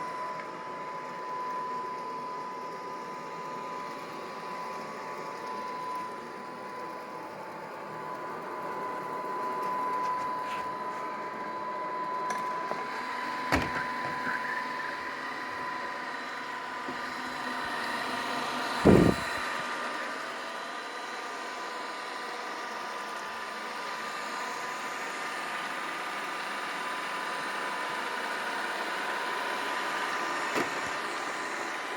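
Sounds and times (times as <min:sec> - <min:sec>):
robot vacuum fan whine: 0:00.0 - 0:31.9
sharp knock: 0:18.9 - 0:19.3
low thump: 0:18.9 - 0:19.4.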